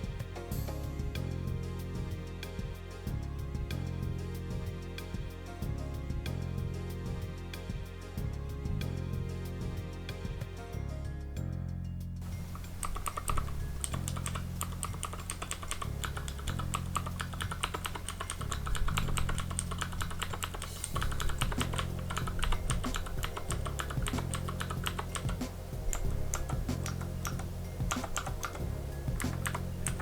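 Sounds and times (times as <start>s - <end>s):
low background music: 0.0s - 30.0s
mechanical keyboard typing: 12.3s - 30.0s.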